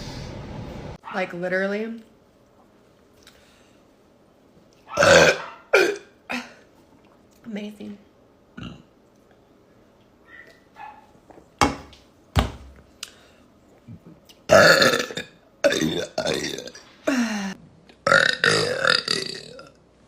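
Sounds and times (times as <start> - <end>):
woman burping loudly: 5.0 - 6.6, 8.6 - 8.9, 14.5 - 19.8.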